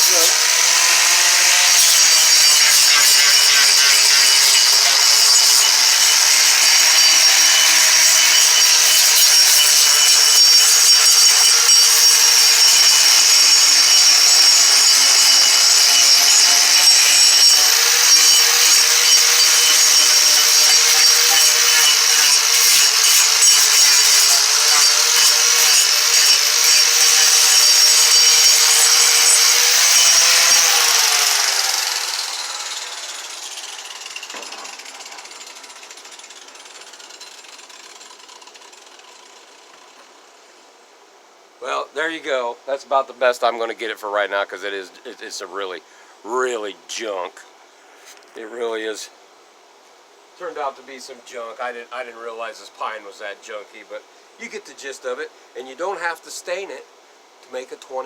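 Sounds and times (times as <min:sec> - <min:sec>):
electric grinder on wood: 0:00.0 - 0:40.0.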